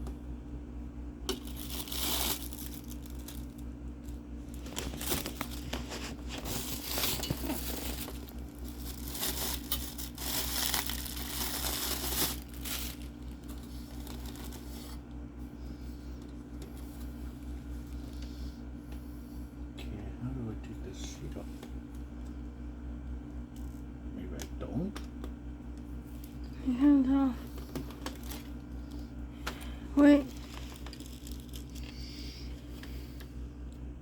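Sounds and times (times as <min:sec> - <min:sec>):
plastic packaging crinkling: 0:01.3 - 0:15.1, 0:27.6 - 0:29.0, 0:29.6 - 0:32.5.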